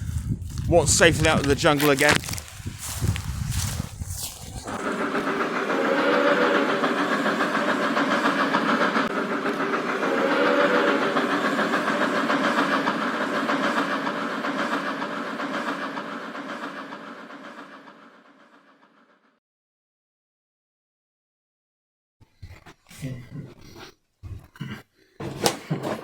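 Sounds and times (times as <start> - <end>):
train clattering on track: 0.7 - 4.0, 4.6 - 19.1.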